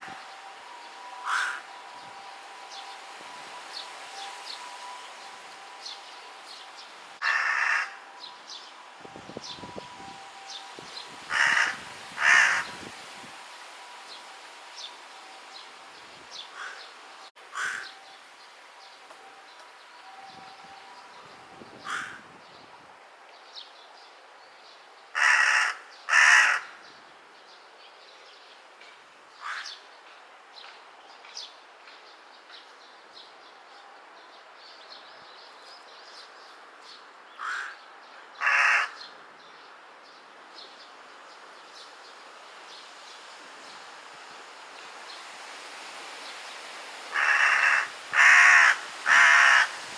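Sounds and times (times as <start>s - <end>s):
crow cawing: 1.2s - 1.7s, 7.2s - 8.0s, 11.3s - 12.8s, 16.5s - 16.9s, 17.5s - 18.0s, 21.8s - 22.3s, 25.2s - 26.8s, 29.4s - 29.7s, 37.4s - 37.8s, 38.4s - 39.0s, 47.1s - 49.8s.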